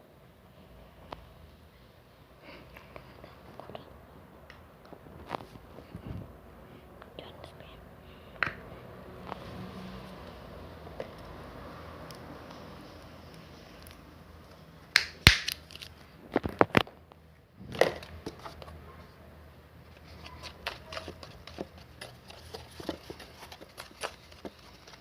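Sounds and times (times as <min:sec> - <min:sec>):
handling knocks and clicks: 0:20.0 - 0:25.0.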